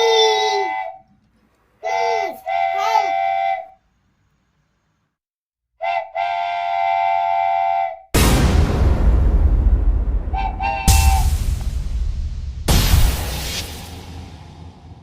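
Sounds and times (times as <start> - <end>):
train horn blasts: 5.8 - 8.0, 10.4 - 11.3.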